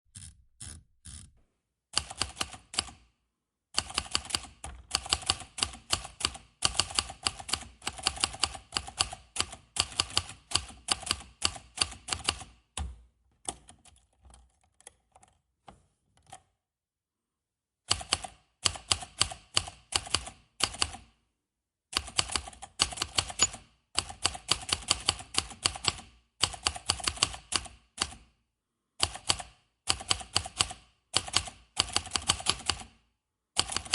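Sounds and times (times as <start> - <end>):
typewriter typing: 2.0 - 3.0, 3.8 - 12.6, 17.9 - 21.1, 22.0 - 28.2, 29.0 - 33.0, 33.6 - 33.9.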